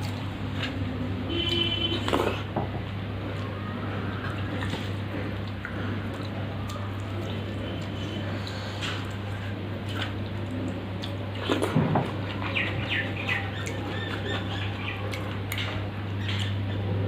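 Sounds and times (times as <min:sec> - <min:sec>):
chewing and wet mouth sounds: 0:00.0 - 0:16.9
steady low hum: 0:00.0 - 0:17.0.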